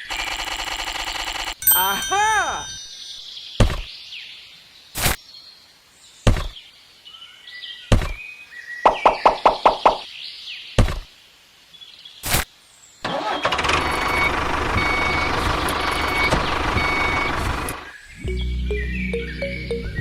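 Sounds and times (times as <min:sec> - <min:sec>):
reversing beeper: 0:13.8 - 0:17.5.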